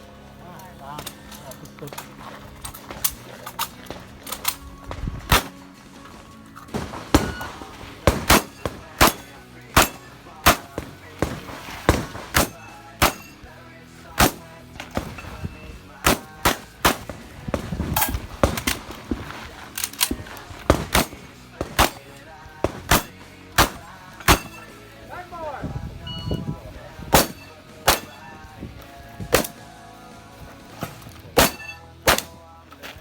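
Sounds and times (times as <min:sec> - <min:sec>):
shotgun shots: 0:05.2 - 0:05.8, 0:06.7 - 0:24.9, 0:27.0 - 0:28.6, 0:29.2 - 0:29.8, 0:30.8 - 0:32.6.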